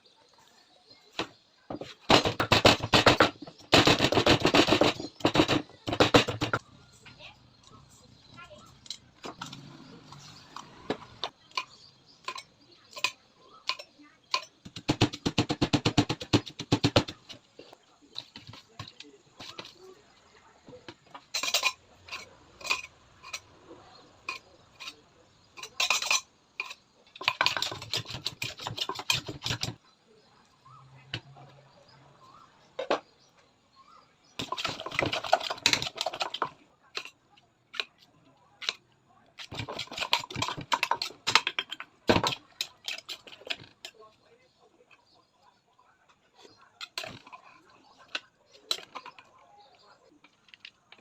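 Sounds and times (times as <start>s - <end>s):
utensils clicking against a dish: 8.7s - 17.1s, 25.6s - 29.8s, 34.4s - 38.0s, 39.4s - 44.1s, 46.8s - 49.3s.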